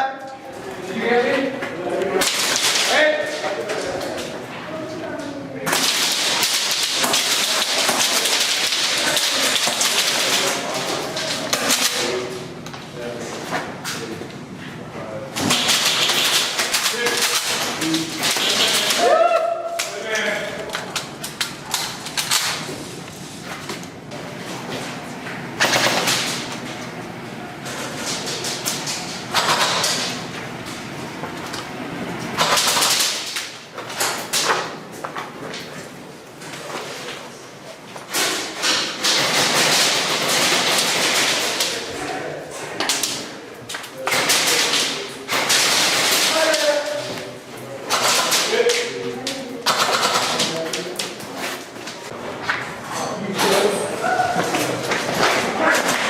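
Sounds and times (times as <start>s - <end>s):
airsoft guns firing: 5.7s - 10.6s, 32.4s - 33.5s, 47.9s - 48.6s, 49.6s - 50.5s
pellets pattering against walls: 15.4s - 19.1s
airsoft guns firing bursts: 15.5s - 19.0s, 39.0s - 41.6s.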